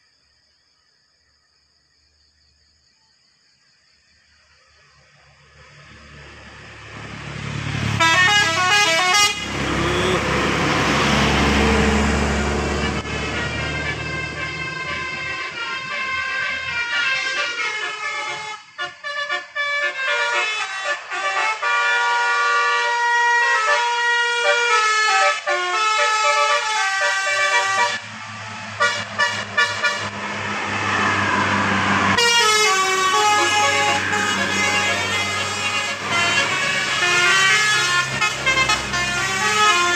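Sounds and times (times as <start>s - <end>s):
bus engine: 4.3s - 39.9s
bus horn playing quick tune: 7.8s - 28.1s, 28.8s - 30.4s, 32.1s - 39.9s.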